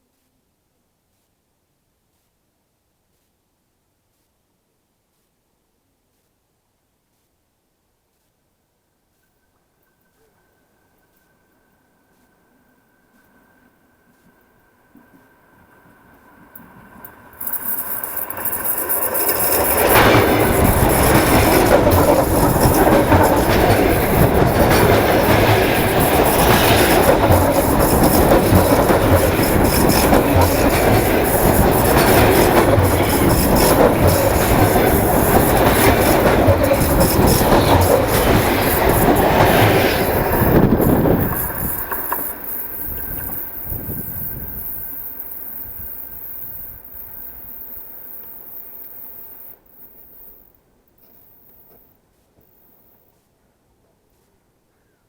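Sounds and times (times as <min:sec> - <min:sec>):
train wheels clattering over rails: 0:16.6 - 0:50.4
wheels squealing: 0:17.0 - 0:51.9.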